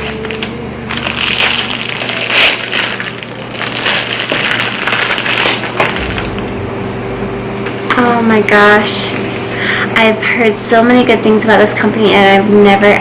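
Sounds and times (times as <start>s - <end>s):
gift wrapping crinkling: 0.0s - 6.4s.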